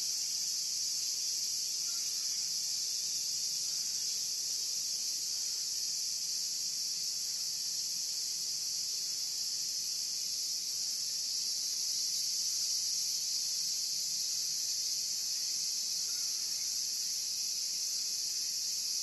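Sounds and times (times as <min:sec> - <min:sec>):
insect chorus drone: 0:00.0 - 0:19.0.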